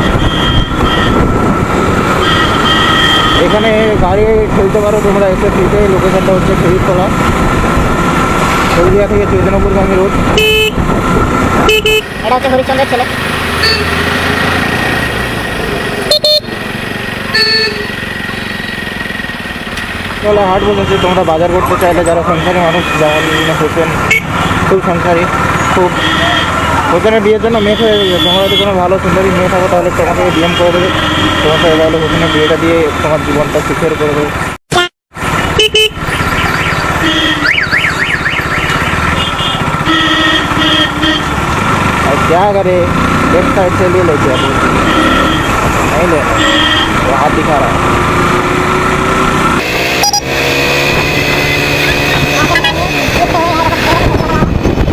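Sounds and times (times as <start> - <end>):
vehicle horn honking: 0.0 - 1.3, 2.1 - 3.9, 10.3 - 10.8, 11.6 - 12.1, 13.6 - 14.0, 16.1 - 16.5, 17.3 - 18.8, 20.5 - 21.4, 22.2 - 24.7, 25.8 - 26.8, 27.6 - 28.8, 30.2 - 32.9, 35.5 - 41.3, 44.3 - 45.6, 46.2 - 47.2, 49.6 - 54.4
motorcycle engine and road noise: 0.0 - 54.9.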